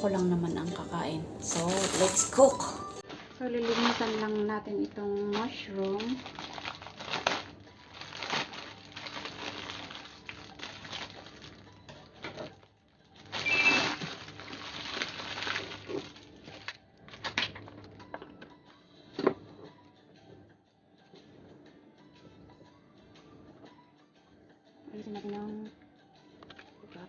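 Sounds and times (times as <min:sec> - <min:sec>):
rustling of handled mushrooms: 0:01.4 - 0:11.7, 0:13.2 - 0:16.7.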